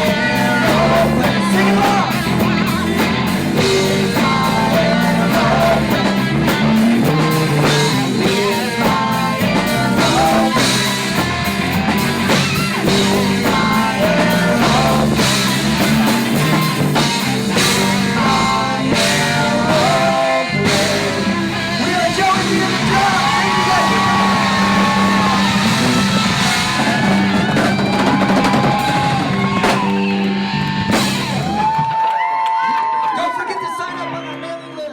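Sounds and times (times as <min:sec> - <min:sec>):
person singing: 0:00.0 - 0:11.4, 0:12.7 - 0:27.3
drum kit: 0:00.0 - 0:32.1
electric guitar: 0:00.0 - 0:33.0.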